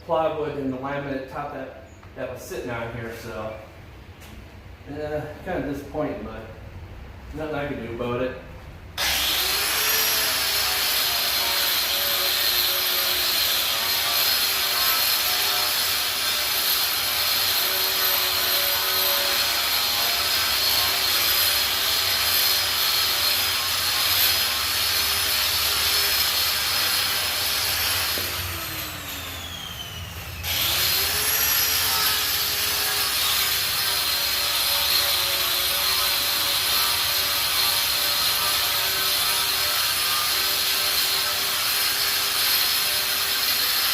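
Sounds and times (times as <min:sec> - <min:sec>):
angle grinder grinding metal: 0:09.0 - 0:43.9.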